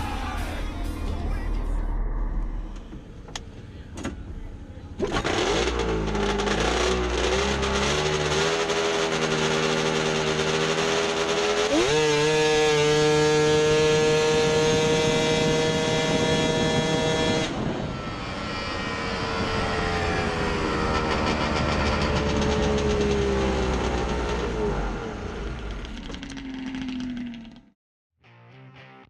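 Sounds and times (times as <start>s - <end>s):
snowmobile engine revving: 5.0s - 27.5s.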